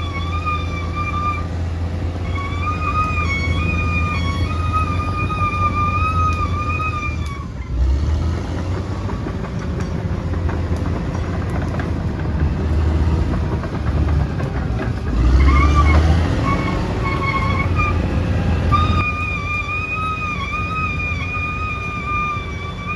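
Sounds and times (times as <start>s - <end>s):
flute-like melody: 0.0s - 7.8s, 13.7s - 22.9s
diesel engine rumbling with clatter: 0.0s - 22.9s.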